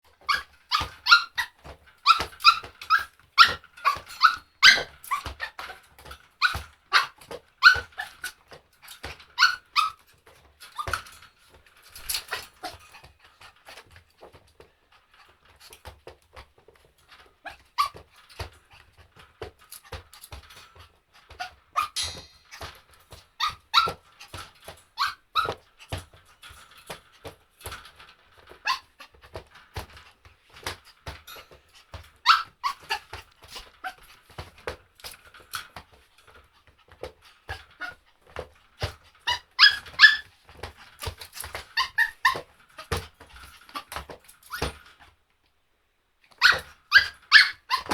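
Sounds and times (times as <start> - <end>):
dog barking high-pitched: 0.3 - 4.9, 46.4 - 47.9.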